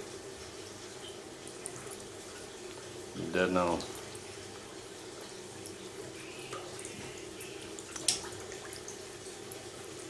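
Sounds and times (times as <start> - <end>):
water trickling and dripping: 0.0 - 10.0.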